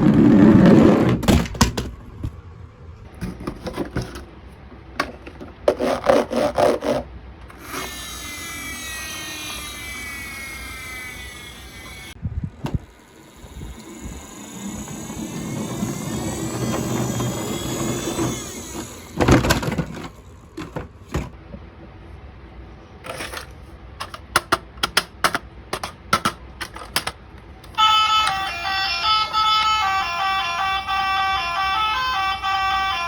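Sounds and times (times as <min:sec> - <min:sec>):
toy motor whirring: 0:07.5 - 0:20.2, 0:27.8 - 0:33.0
plastic clatter and clicks: 0:23.1 - 0:27.2.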